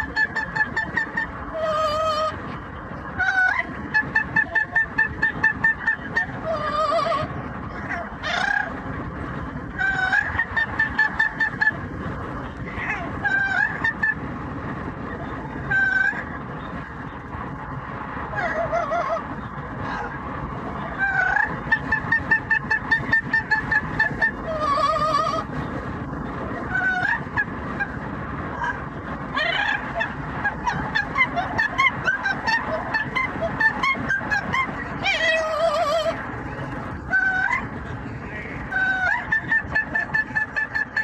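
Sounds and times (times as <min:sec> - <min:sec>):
car road rumble: 0:00.0 - 0:41.0
parrot squawking: 0:29.3 - 0:36.2.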